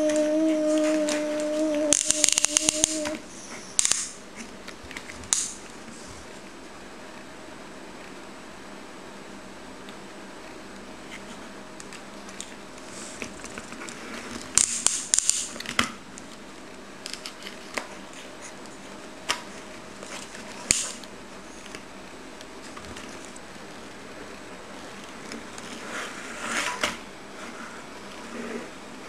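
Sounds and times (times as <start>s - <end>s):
plastic toy clicks: 1.9s - 3.1s
scratchy rustles: 22.6s - 28.8s.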